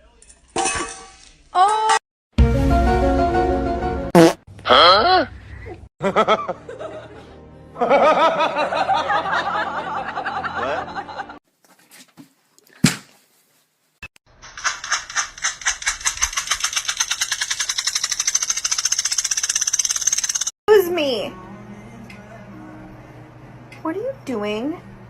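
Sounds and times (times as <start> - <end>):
person laughing: 4.7 - 11.4
fast rattle of rapid pulses: 14.4 - 20.5.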